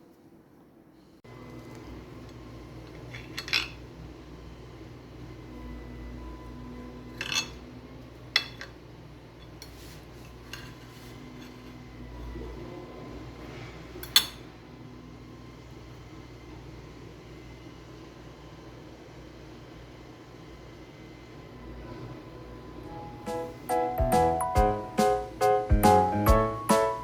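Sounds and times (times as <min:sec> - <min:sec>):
low background hum: 0:00.0 - 0:27.0
cutlery and dishes clinking: 0:02.8 - 0:03.8, 0:07.1 - 0:07.7, 0:08.3 - 0:08.8, 0:14.0 - 0:14.4.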